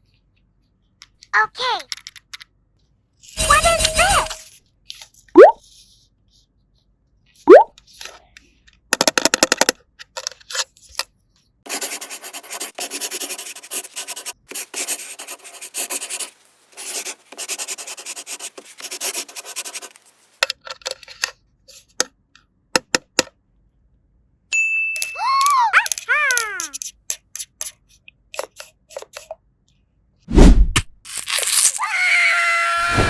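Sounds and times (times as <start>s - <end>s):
rubbing and scratching: 3.3s - 4.6s, 11.7s - 20.4s.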